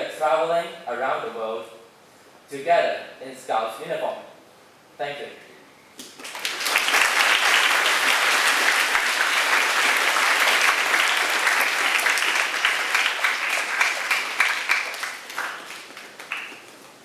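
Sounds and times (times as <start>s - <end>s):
audience applauding: 6.1s - 17.0s.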